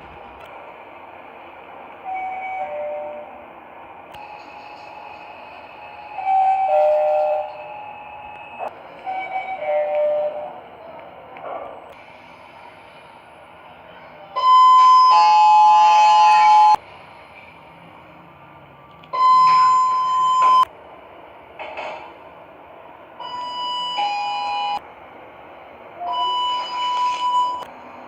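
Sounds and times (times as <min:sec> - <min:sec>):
elevator chimes: 0:19.2 - 0:20.7, 0:26.0 - 0:27.7.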